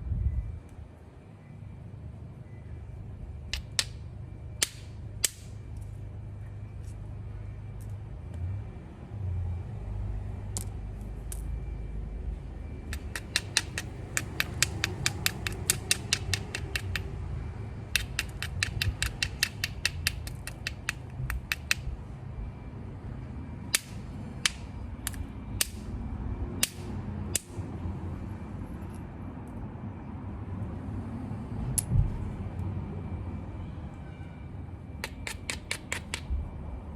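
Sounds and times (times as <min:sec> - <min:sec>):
stone knapping clicks: 0:03.5 - 0:04.0, 0:12.9 - 0:17.1, 0:17.9 - 0:21.9, 0:35.0 - 0:36.3.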